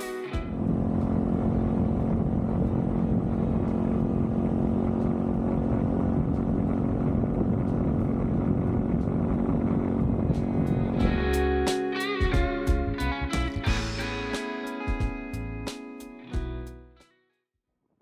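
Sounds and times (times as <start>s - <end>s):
wind rumble on microphone: 0.4s - 11.6s
motorcycle engine running: 0.4s - 14.3s.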